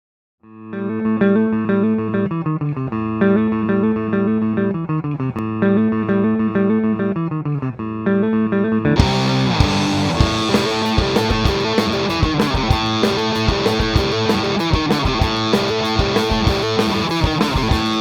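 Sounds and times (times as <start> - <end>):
clean bass and guitar riff: 0.4 - 18.0
distorted guitar: 0.5 - 18.0
drums: 9.0 - 18.0.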